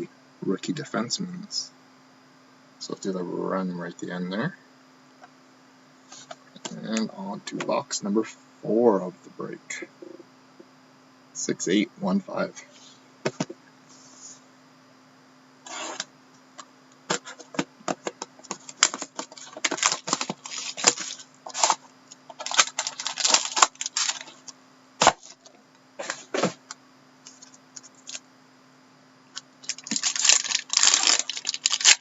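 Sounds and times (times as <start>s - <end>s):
cards handled by hand: 17.1s - 26.6s
card box packaging opened: 18.5s - 26.6s, 29.6s - 32.0s.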